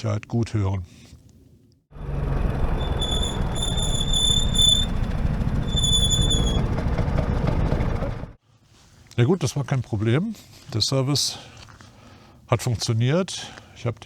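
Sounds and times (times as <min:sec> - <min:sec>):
riding and wind noise: 0:02.1 - 0:08.4
scooter brake squealing: 0:02.6 - 0:06.8.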